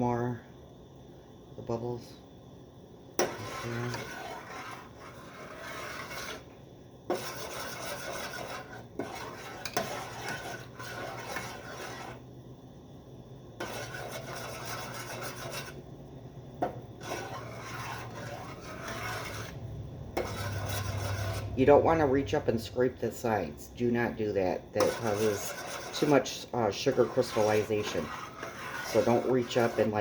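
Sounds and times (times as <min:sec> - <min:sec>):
steady low hum: 0:00.0 - 0:30.0
utensil scraping saucepan bottom: 0:03.2 - 0:12.2, 0:13.6 - 0:15.8, 0:16.6 - 0:22.4, 0:24.1 - 0:30.0.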